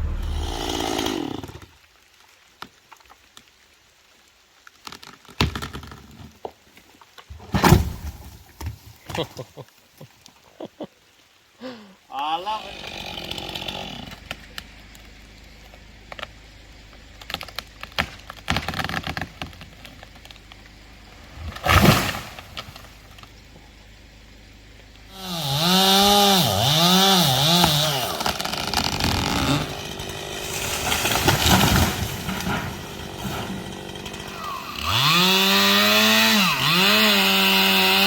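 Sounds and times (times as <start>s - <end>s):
loud crash: 0.0s - 1.2s
chainsaw revving: 0.0s - 1.7s, 12.2s - 15.0s, 25.1s - 38.0s
knocks and cracks: 4.7s - 6.6s, 17.0s - 20.7s, 27.6s - 34.2s.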